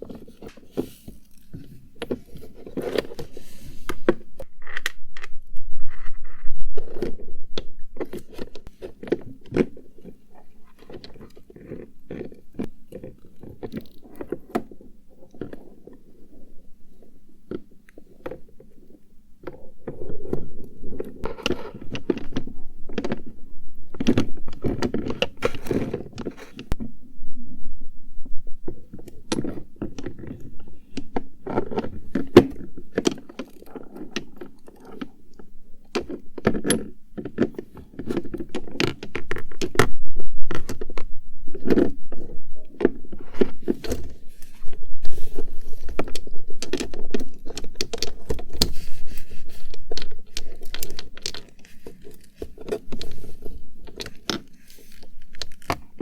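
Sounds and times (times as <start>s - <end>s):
small cases and bottles clicking: 28.7s - 56.0s.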